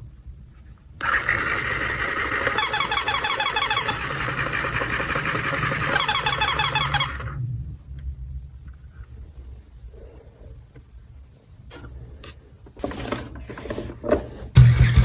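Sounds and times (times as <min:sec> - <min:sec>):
toy electronic chirps: 0:01.8 - 0:07.4.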